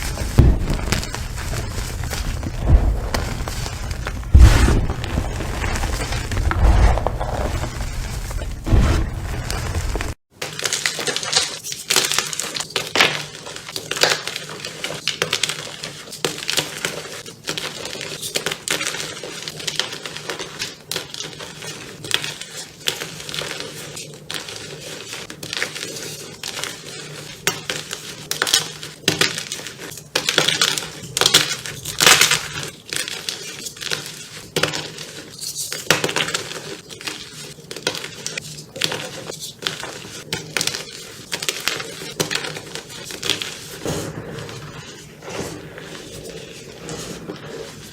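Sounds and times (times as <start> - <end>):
chalk crunching and cracking: 0.0 - 10.2, 28.8 - 47.9.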